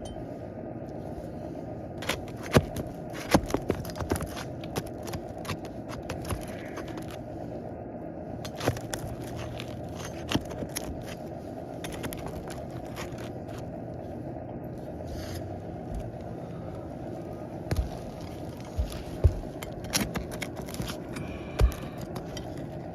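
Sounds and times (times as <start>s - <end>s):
steady low rumble: 0.0s - 22.9s
shingles scraping and clicking: 2.0s - 7.2s, 8.4s - 13.7s, 17.7s - 22.8s.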